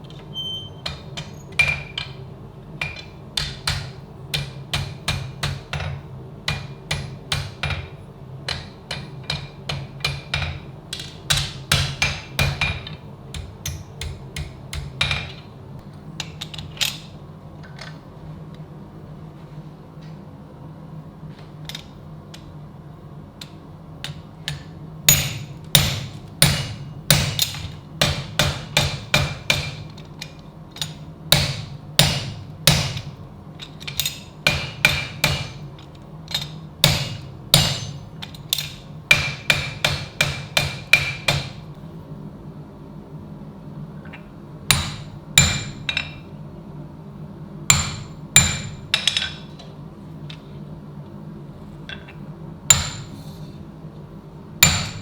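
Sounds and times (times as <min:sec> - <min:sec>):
steady low hum: 0:00.0 - 0:55.0
hammer striking steel: 0:24.1 - 0:29.9, 0:31.4 - 0:33.1, 0:34.0 - 0:35.6, 0:36.8 - 0:41.6, 0:44.7 - 0:46.2, 0:47.7 - 0:49.4, 0:52.7 - 0:53.3, 0:54.6 - 0:55.0.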